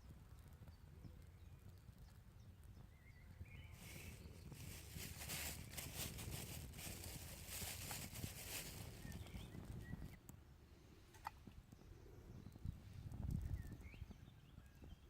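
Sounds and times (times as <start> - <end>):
wind rumble on microphone: 0.0 - 10.2, 11.4 - 15.0
faint bird chirps: 2.7 - 10.2
rustling: 3.7 - 10.1.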